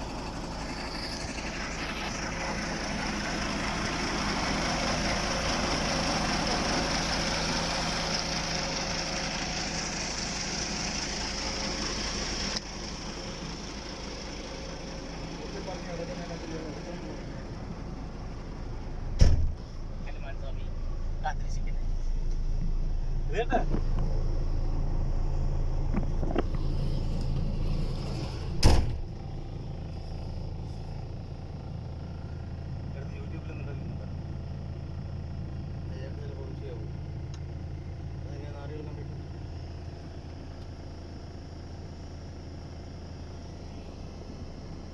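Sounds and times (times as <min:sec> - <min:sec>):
truck engine running: 0:00.0 - 0:44.9
loud thump: 0:19.2 - 0:19.6, 0:28.5 - 0:29.1.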